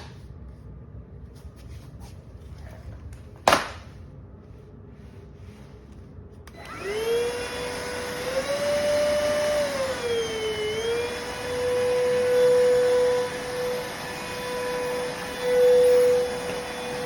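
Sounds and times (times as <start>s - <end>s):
vacuum cleaner motor whine: 6.4s - 17.0s.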